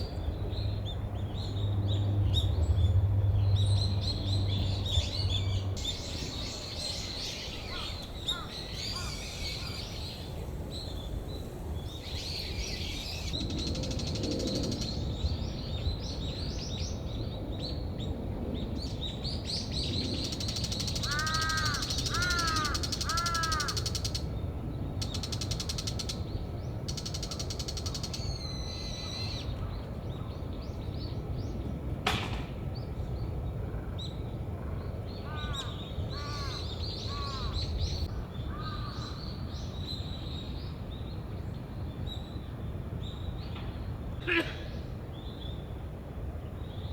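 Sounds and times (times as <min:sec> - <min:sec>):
crow cawing: 0:07.7 - 0:09.8, 0:21.0 - 0:24.2, 0:35.3 - 0:37.6, 0:38.5 - 0:39.2.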